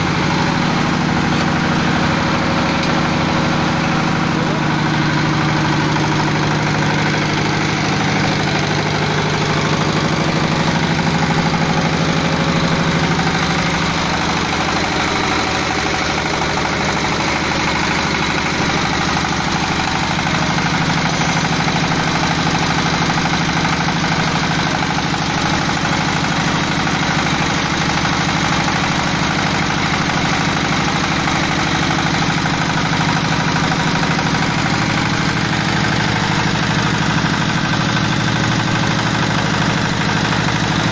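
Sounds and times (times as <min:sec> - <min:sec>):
pellet machine running: 0:00.0 - 0:40.9.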